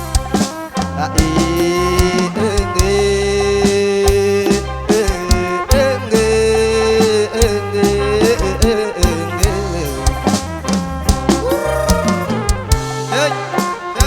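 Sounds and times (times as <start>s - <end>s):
sustained bass: 0.0s - 13.6s
band playing live: 0.0s - 14.0s
sliding lead melody: 0.0s - 14.0s
drum strikes: 8.6s - 13.0s
person singing verses: 11.4s - 13.5s.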